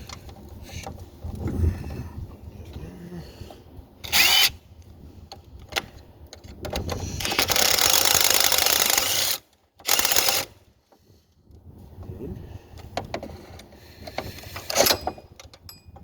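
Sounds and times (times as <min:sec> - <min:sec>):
power tool rattling: 0:04.0 - 0:04.5, 0:06.8 - 0:10.6.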